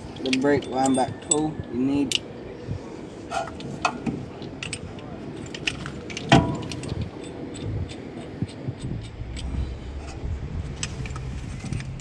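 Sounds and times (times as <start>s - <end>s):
metal tools clinking: 0.0s - 2.2s, 4.4s - 8.0s
ringing metal knock: 6.3s - 7.0s.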